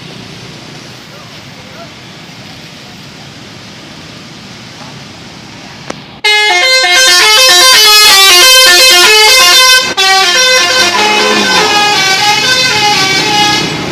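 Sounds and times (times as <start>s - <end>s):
musical air horn tune: 6.3s - 13.8s.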